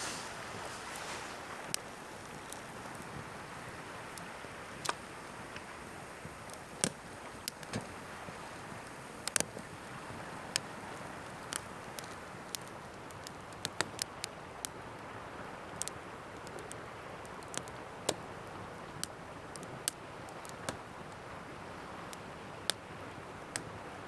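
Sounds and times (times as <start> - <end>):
ocean surf: 0.0 - 12.7
campfire crackling: 0.0 - 24.0.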